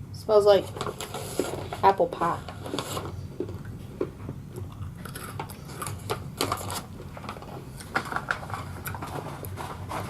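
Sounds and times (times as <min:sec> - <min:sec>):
snack bag crackling: 0:04.7 - 0:10.0.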